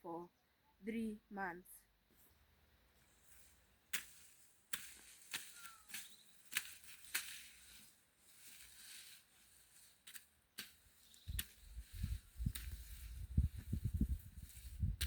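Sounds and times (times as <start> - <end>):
short scraping rustle: 3.0 - 14.9.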